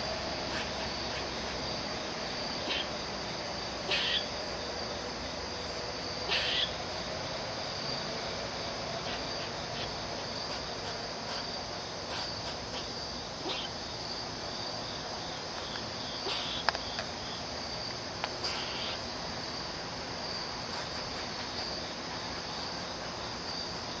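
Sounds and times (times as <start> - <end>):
high-pitched insect drone: 0.0 - 24.0
squirrel giving sharp calls: 2.6 - 3.0, 3.8 - 4.3, 6.2 - 6.8, 9.0 - 13.8, 16.2 - 16.7, 18.4 - 19.0.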